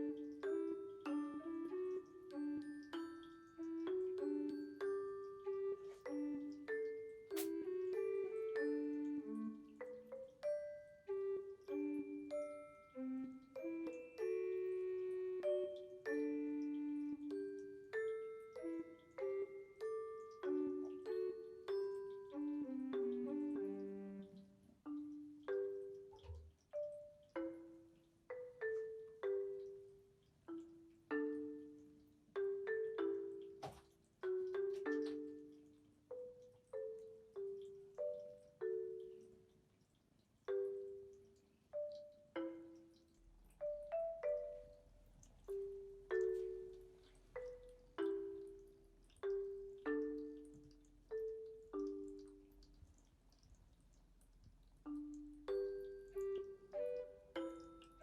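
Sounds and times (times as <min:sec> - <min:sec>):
gentle marimba melody: 0:00.0 - 0:39.7, 0:40.5 - 0:53.0, 0:54.8 - 0:58.0.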